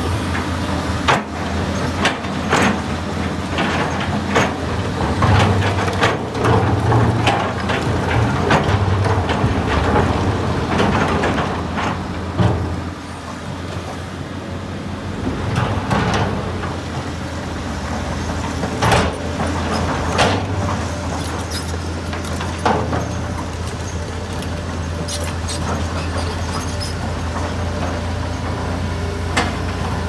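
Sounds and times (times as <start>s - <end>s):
excavator diesel engine revving: 14.9s - 30.0s.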